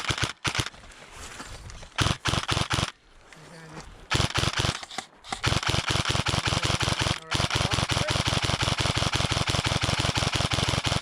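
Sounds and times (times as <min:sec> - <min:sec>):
airsoft gun firing full auto: 0:00.0 - 0:00.7, 0:02.0 - 0:02.9, 0:04.1 - 0:04.8, 0:05.4 - 0:11.0.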